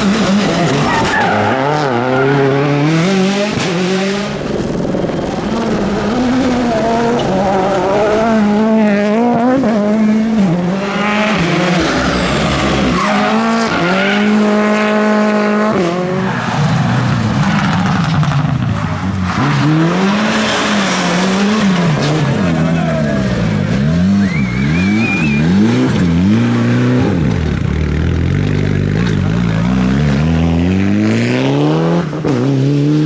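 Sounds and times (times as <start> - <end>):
rally car engine revving: 0.0 - 33.0
tyre and road noise: 0.0 - 33.0.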